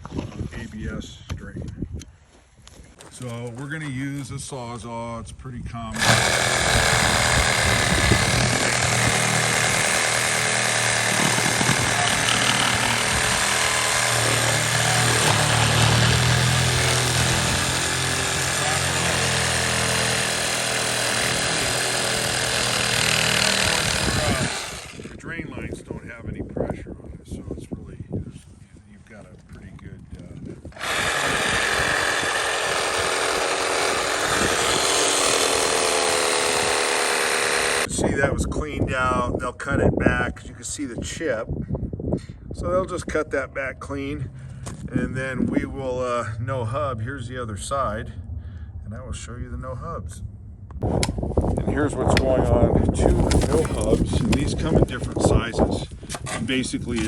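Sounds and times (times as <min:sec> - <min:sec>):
reciprocating saw buzzing: 0:06.0 - 0:25.2, 0:30.7 - 0:37.9.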